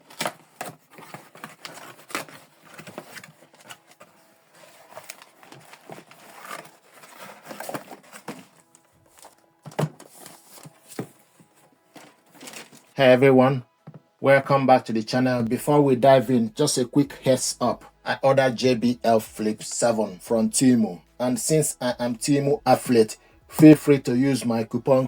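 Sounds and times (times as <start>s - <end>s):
objects clicking and crinkling: 0.0s - 13.0s
faint background music: 0.0s - 25.0s.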